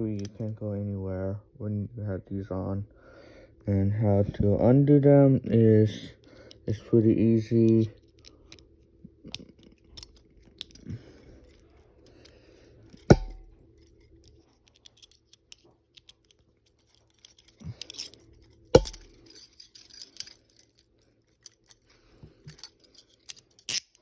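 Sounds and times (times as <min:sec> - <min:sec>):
handcuff snaps: 0:00.2 - 0:00.4, 0:09.3 - 0:24.0
handcuff clicks and clinks: 0:09.3 - 0:24.0.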